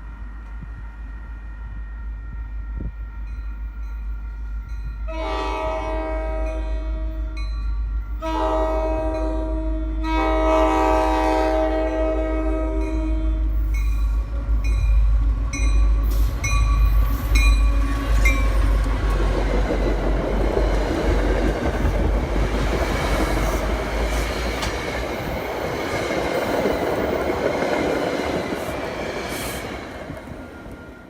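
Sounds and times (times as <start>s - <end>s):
train wheels rushing on rails: 0.0s - 31.0s
locomotive bell ringing: 6.4s - 8.2s, 11.8s - 18.7s.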